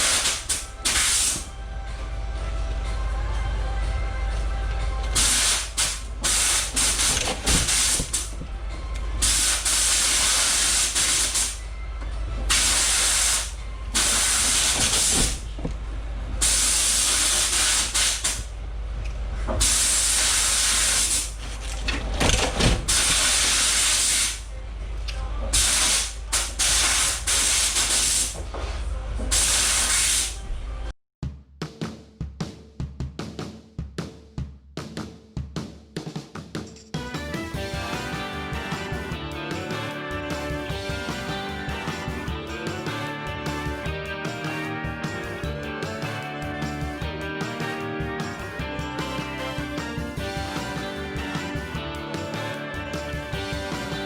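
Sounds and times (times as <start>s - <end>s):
compressed air blasting: 0.0s - 1.5s, 5.1s - 8.4s, 9.2s - 11.6s, 12.5s - 15.6s, 16.4s - 18.5s, 19.6s - 21.4s, 22.8s - 24.5s, 25.6s - 28.4s, 29.3s - 30.4s.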